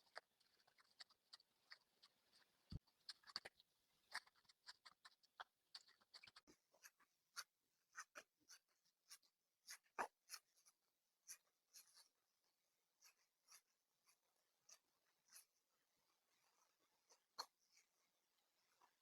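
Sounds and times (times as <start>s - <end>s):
clicks and scratchy rustles: 0.0s - 12.1s.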